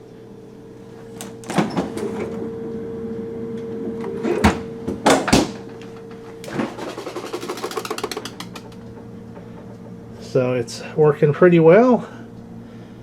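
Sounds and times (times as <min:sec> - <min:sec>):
refrigerator compressor humming: 0:00.0 - 0:13.0
rapid even ticking: 0:06.8 - 0:10.3.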